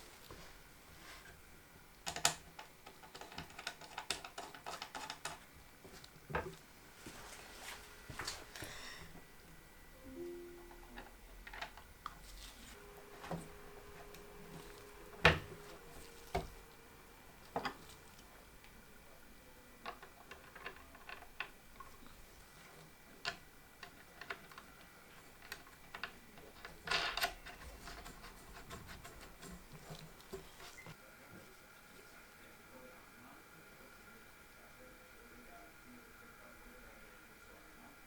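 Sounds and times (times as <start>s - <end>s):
computer parts clicking and tapping: 2.0s - 5.5s.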